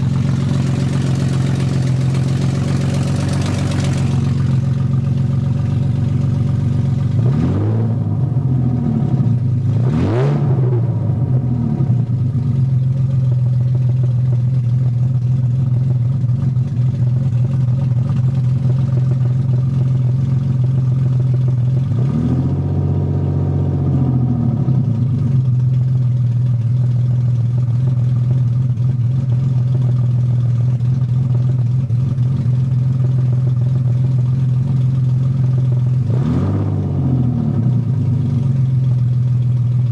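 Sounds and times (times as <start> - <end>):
engine revving: 0.0 - 4.6, 7.0 - 12.4, 21.8 - 25.3, 35.9 - 38.5
car engine idling roughly: 0.0 - 10.0, 10.8 - 39.9.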